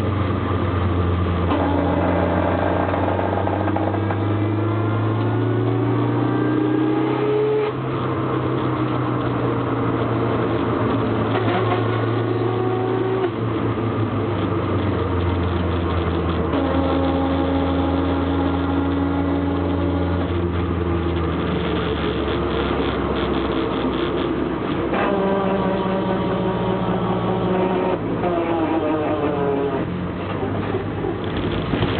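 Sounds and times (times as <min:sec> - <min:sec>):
car driving low drone: 0:00.0 - 0:31.9
drivetrain whine rising in pitch: 0:01.5 - 0:07.8.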